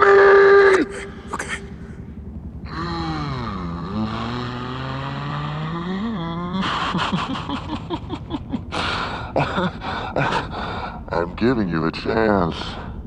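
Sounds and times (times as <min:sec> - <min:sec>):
man moaning: 0:02.7 - 0:07.6
man sobbing gasps: 0:08.7 - 0:11.0.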